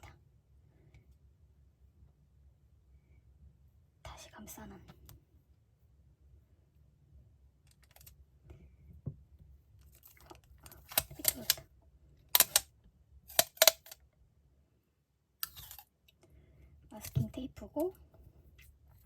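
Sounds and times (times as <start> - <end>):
sharp clicks and taps: 12.4 - 12.6.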